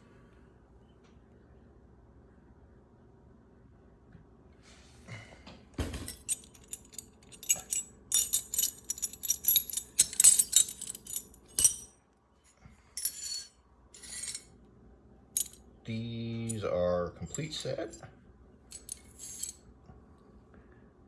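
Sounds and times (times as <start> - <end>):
tools rattling: 5.9 - 11.9, 13.0 - 14.4, 15.4 - 15.6, 17.2 - 18.0, 18.7 - 19.6
metal tools clinking: 6.0 - 11.9, 13.0 - 14.5, 15.4 - 15.6, 16.4 - 16.6, 17.2 - 18.0, 18.7 - 19.6.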